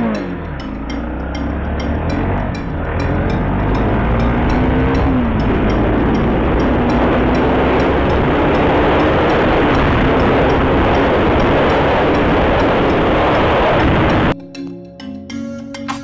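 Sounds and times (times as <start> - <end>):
motorcycle engine at speed: 0.0 - 14.4
wind rush on microphone: 2.4 - 14.4.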